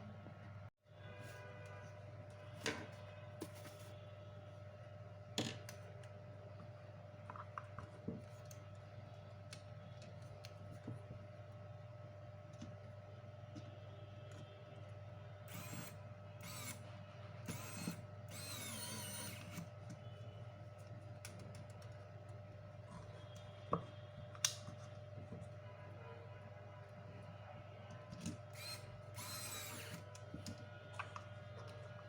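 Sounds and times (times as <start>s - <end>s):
small motor whirring: 15.5s - 16.8s, 17.4s - 19.7s, 28.5s - 30.1s.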